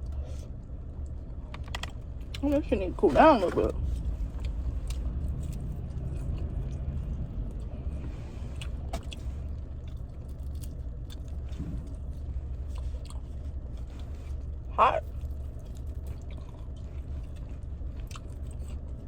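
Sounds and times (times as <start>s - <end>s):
car engine idling: 0.0s - 19.0s
food being chewed: 3.8s - 19.0s.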